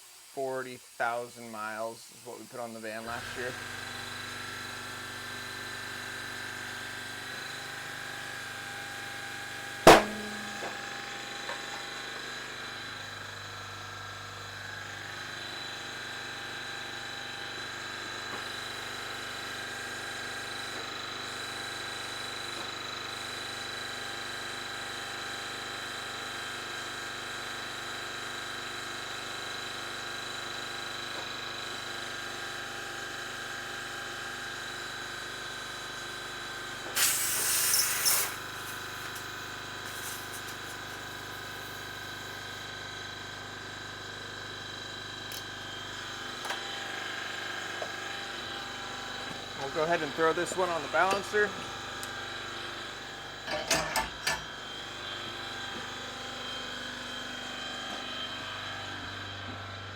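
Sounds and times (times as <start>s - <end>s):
machinery humming with high whine: 6.0s - 15.7s
compressed air hiss: 36.8s - 42.6s.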